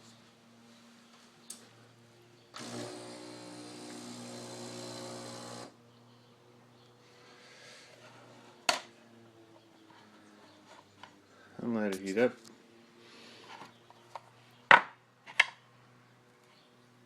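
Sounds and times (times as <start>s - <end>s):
espresso machine pump buzzing: 2.6s - 5.8s.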